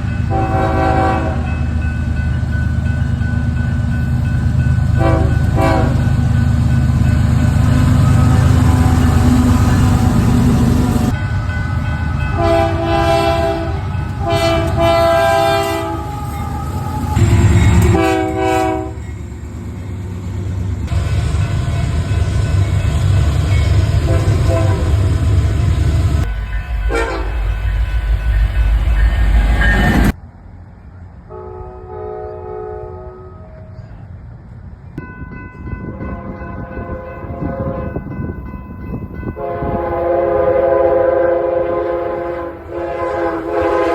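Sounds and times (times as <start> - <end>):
train rumbling and clattering past: 0.0 - 43.9
locomotive air horn chord: 0.3 - 1.6, 5.0 - 6.2, 7.7 - 19.2, 24.0 - 25.3, 26.2 - 27.7, 31.3 - 33.8, 39.3 - 43.9.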